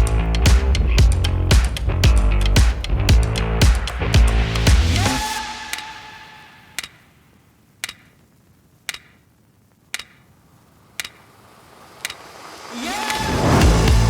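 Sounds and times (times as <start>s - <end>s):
music: 0.0s - 6.2s, 13.1s - 14.0s
sharp ticks: 7.8s - 9.2s, 9.8s - 10.3s, 10.9s - 11.3s, 11.9s - 12.3s.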